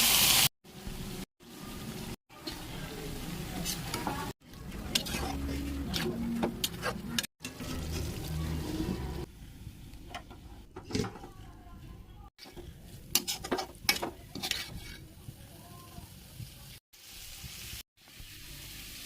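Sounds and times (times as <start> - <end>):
food sizzling in a pan: 0.0 - 4.4, 12.5 - 19.0
spatula scraping a pan: 3.6 - 9.3, 12.4 - 15.2.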